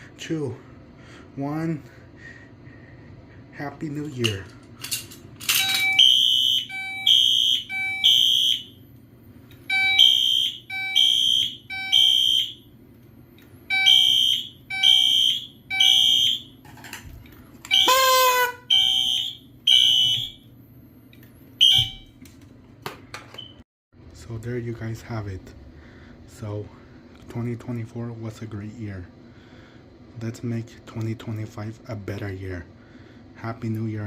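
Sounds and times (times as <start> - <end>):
fire alarm beeping: 5.5 - 8.8, 9.6 - 12.7, 13.6 - 16.6, 17.6 - 20.5, 21.6 - 22.2.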